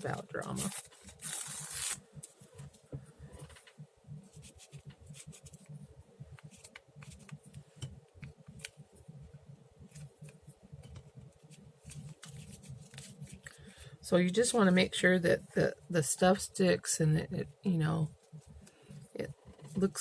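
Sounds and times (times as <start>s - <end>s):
paper crinkling: 0.1s - 2.4s, 11.2s - 13.7s.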